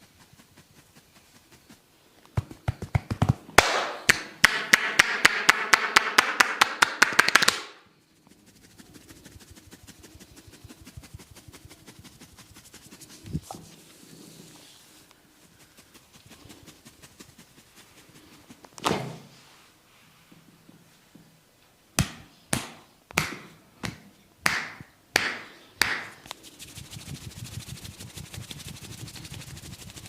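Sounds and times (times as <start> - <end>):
fast scalp scratching: 0.0 - 3.4, 7.9 - 18.8, 26.3 - 30.0
hair rubbing: 0.0 - 3.4, 7.3 - 19.6, 26.0 - 30.0
hands smacking on head: 2.4 - 7.8, 22.0 - 26.2.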